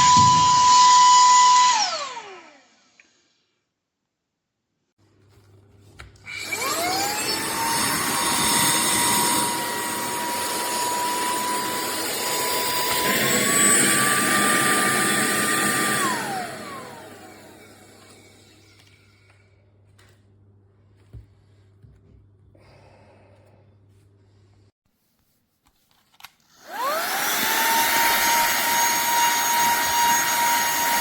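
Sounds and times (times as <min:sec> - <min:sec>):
handheld vacuum motor whining: 0:00.0 - 0:03.2, 0:06.3 - 0:19.0, 0:26.5 - 0:31.0.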